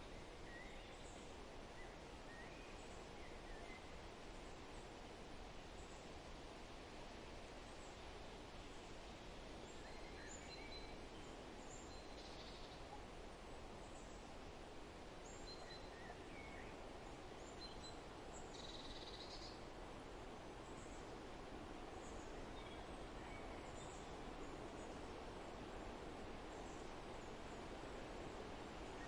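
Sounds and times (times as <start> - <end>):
background hiss: 0.0 - 29.0.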